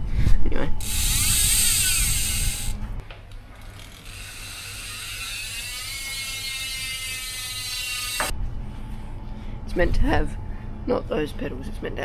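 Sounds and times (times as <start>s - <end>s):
bicycle freewheel buzzing: 0.8s - 3.0s, 3.6s - 8.3s.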